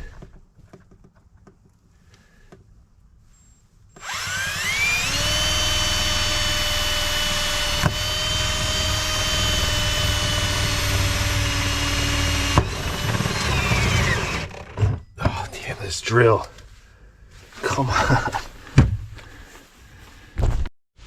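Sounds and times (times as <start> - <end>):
electric drill whining: 4.0 - 14.8.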